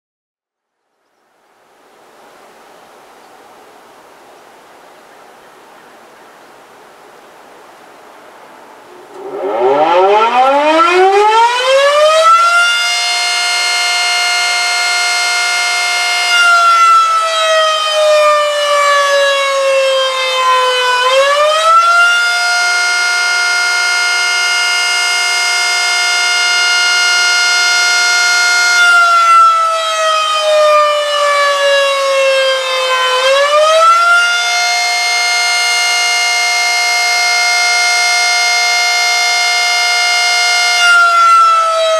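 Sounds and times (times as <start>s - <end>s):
fire siren winding up and down: 8.9s - 41.9s.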